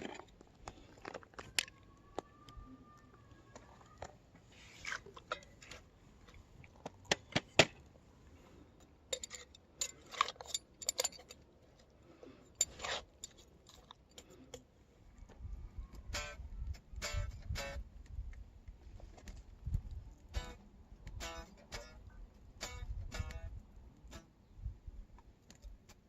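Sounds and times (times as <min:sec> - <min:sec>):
small objects being handled: 0:00.0 - 0:07.6.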